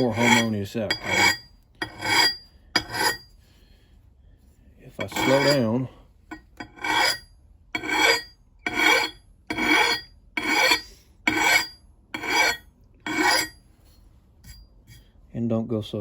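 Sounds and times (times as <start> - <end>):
file strokes on axe blade: 0.0 - 3.3, 5.0 - 5.8, 6.7 - 7.2, 7.8 - 13.6.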